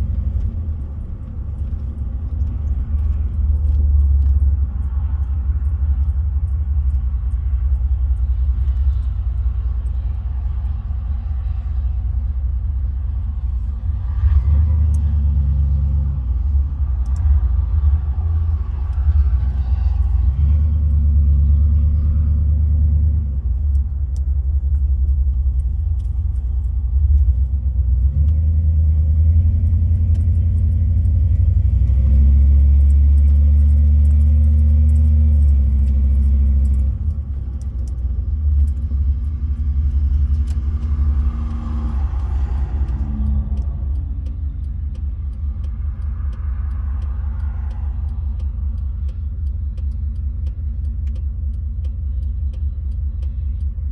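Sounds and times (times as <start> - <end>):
truck engine and road rumble: 0.0 - 53.9.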